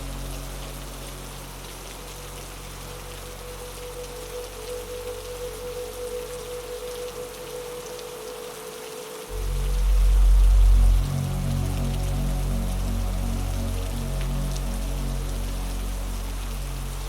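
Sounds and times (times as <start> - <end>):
rain patter: 0.0 - 17.0
dark synth drone: 9.2 - 17.0
deep synth swell: 9.3 - 17.0.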